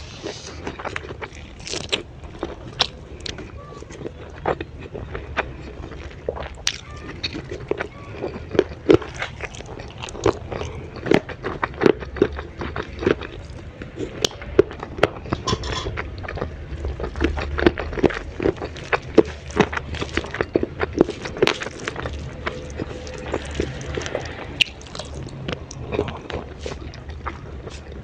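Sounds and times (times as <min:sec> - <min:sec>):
crisp crunching and chewing: 0:00.0 - 0:28.0.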